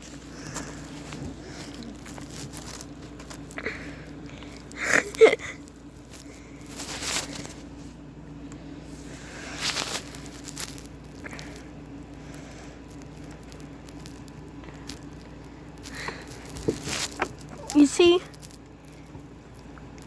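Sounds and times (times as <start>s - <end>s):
steady low hum: 0.0s - 20.0s
cats scuffling on bedding: 6.0s - 8.0s.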